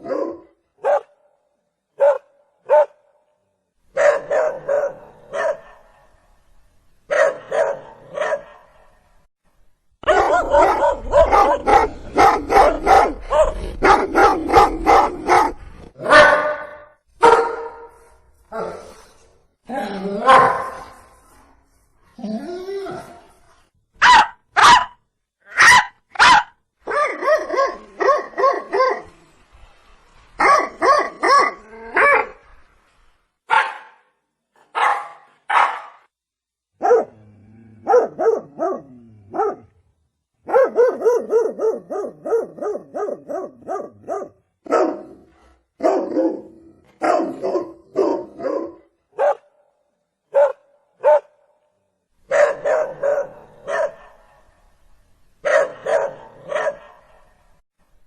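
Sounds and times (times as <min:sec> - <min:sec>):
dog barking: 0:00.0 - 0:01.3, 0:02.0 - 0:03.1, 0:03.9 - 0:06.2, 0:07.1 - 0:09.0, 0:10.0 - 0:18.0, 0:20.2 - 0:21.0, 0:24.0 - 0:29.1, 0:30.4 - 0:32.4, 0:33.5 - 0:36.1, 0:36.8 - 0:37.2, 0:37.8 - 0:39.7, 0:40.4 - 0:49.6, 0:50.3 - 0:51.5, 0:52.3 - 0:54.6, 0:55.4 - 0:57.4.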